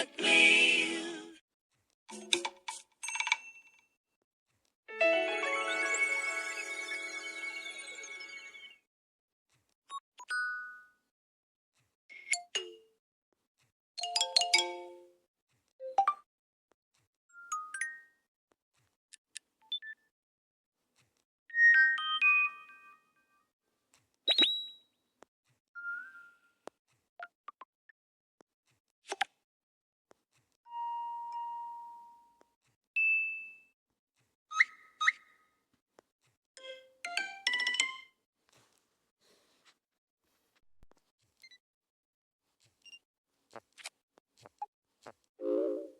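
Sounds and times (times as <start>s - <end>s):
fast run of bright notes: 5.2s - 8.6s.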